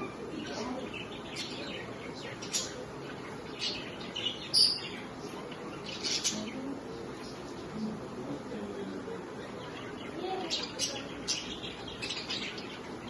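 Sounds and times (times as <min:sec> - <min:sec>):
budgerigars chirping: 0:00.0 - 0:06.6, 0:09.6 - 0:13.0.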